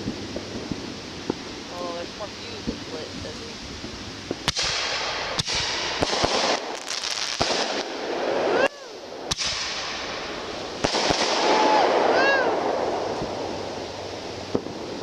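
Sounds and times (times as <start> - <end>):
firework bangs: 0.0 - 15.0
firework crackling: 0.0 - 15.0
firework whistle: 4.4 - 14.6.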